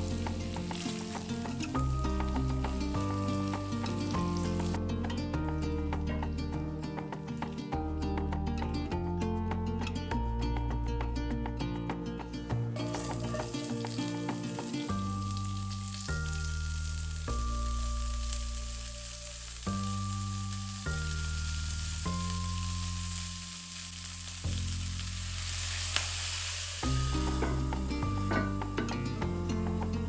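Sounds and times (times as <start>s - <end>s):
food sizzling in a pan: 0.0s - 4.9s, 12.8s - 30.0s
music with held bass notes: 0.0s - 25.9s, 26.8s - 30.0s.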